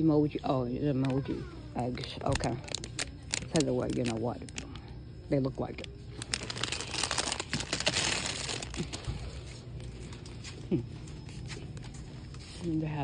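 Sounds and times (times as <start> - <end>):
plastic packaging crinkling: 2.0 - 4.8, 5.6 - 10.3.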